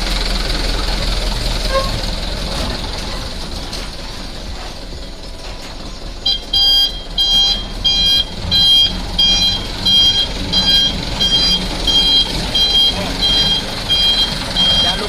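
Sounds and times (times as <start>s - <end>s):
truck engine running: 0.0s - 15.0s
truck reversing alarm beeping: 4.2s - 15.0s.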